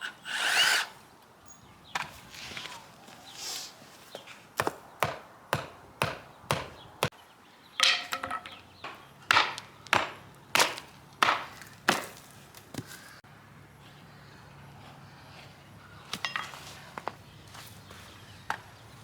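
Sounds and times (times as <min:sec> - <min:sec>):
hammer striking wooden boards: 0:04.6 - 0:06.8, 0:07.8 - 0:12.2.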